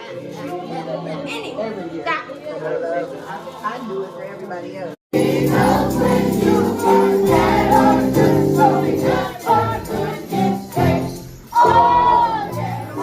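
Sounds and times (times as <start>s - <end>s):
choir singing gospel music: 5.1s - 13.0s.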